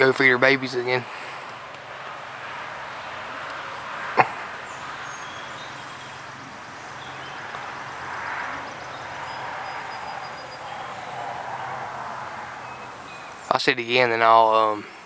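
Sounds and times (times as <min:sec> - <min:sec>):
distant bird chirps: 0:02.6 - 0:13.6.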